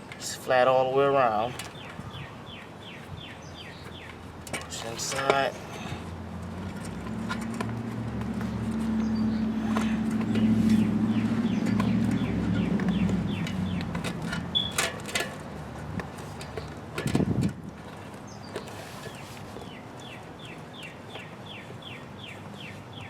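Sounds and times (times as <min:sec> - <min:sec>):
low motor hum: 0:06.1 - 0:14.8.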